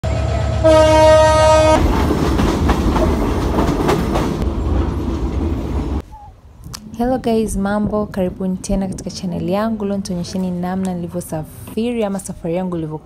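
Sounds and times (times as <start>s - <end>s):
train horn: 0.1s - 1.9s
train clattering on rails: 1.4s - 6.0s.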